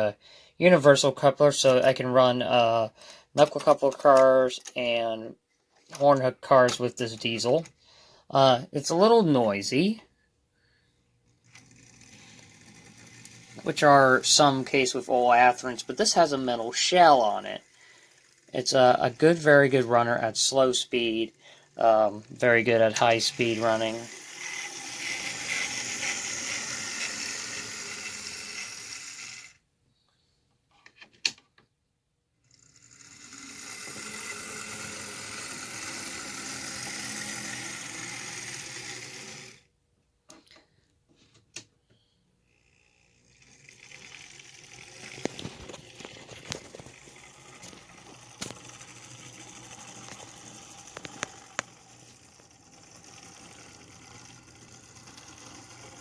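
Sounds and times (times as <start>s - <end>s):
model train motor whirring: 11.2s - 29.6s, 32.4s - 39.7s, 42.5s - 56.0s
model train clicks: 43.8s - 52.1s.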